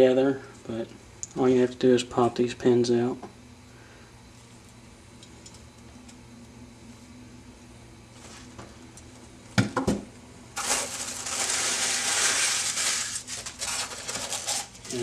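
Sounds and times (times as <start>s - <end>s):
packaging rustling: 10.6s - 15.0s.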